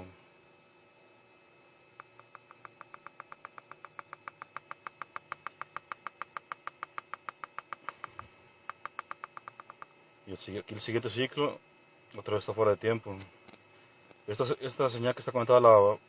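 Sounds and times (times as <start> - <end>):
mouse scroll wheel clicking: 2.0 - 9.9.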